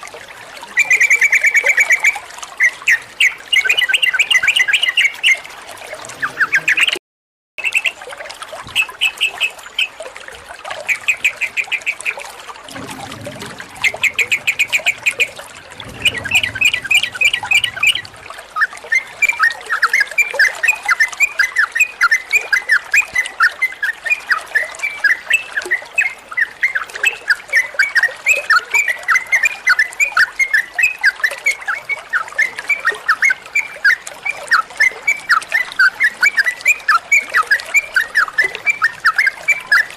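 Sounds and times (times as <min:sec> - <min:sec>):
bird chirping rapidly: 0:12.8 - 0:18.2.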